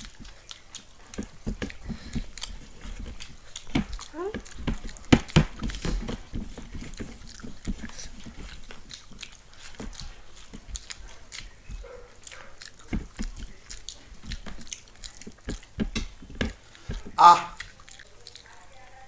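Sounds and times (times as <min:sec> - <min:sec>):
chewing and biting food: 0:00.0 - 0:18.7.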